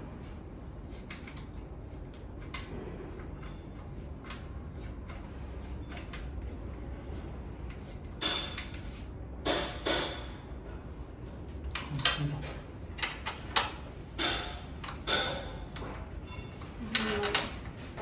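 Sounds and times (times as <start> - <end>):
low steady hum: 0.0 - 18.0
knocks and clinks of parts and tools: 9.4 - 10.8, 11.6 - 18.0.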